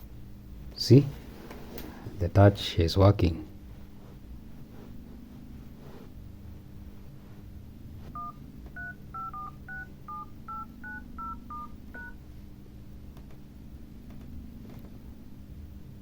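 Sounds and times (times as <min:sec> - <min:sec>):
keypad touch-tone beeps: 0:08.1 - 0:12.2.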